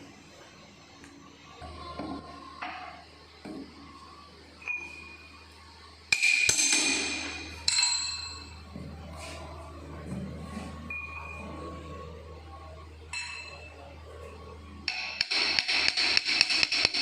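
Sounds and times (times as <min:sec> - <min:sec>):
low machine hum: 0:00.0 - 0:17.0.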